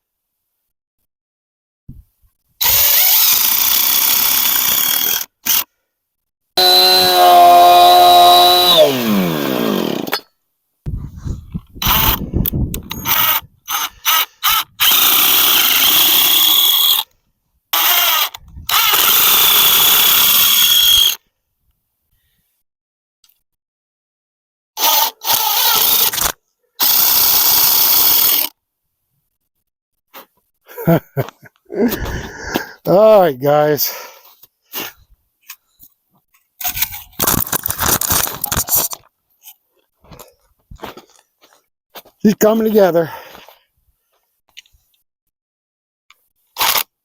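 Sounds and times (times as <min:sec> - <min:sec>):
power drill running: 0:02.6 - 0:05.6, 0:06.6 - 0:10.2, 0:11.8 - 0:12.2, 0:12.8 - 0:17.0, 0:17.8 - 0:21.2, 0:24.8 - 0:28.5.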